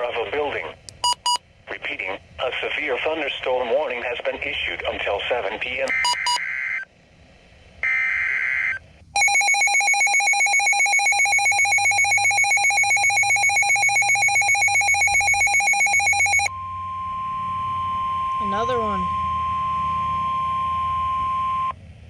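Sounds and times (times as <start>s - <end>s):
rapid electronic alarm beeps: 1.0s - 1.4s, 5.9s - 6.8s, 7.8s - 21.7s
steady single-pitch warning tone: 7.8s - 21.8s.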